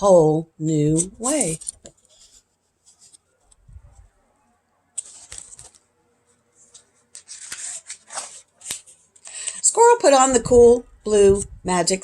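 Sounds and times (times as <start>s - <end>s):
paper rustling page turned: 1.0s - 3.6s, 5.0s - 9.4s.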